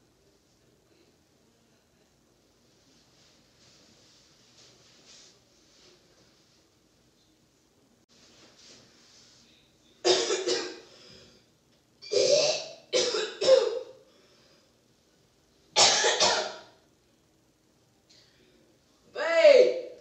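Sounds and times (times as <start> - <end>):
man coughing: 10.0 - 10.9, 15.8 - 16.7.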